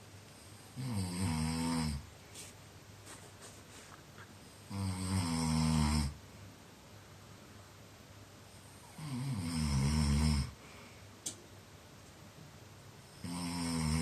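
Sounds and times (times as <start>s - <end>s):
man snoring: 0.8s - 2.1s, 4.6s - 6.2s, 8.8s - 10.6s, 13.1s - 14.0s
quiet breathing: 10.4s - 11.3s.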